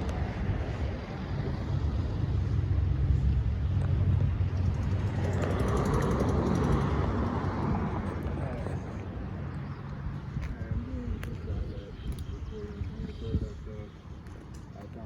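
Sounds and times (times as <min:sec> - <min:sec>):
car passing: 0:04.1 - 0:09.7.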